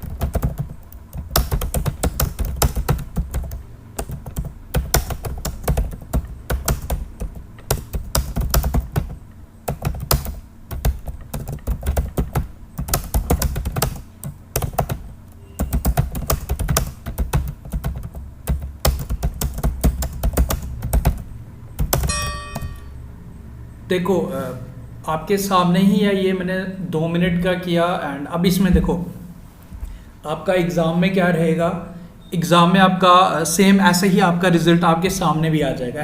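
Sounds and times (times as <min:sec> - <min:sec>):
fast typing on keyboard: 0:00.0 - 0:22.1.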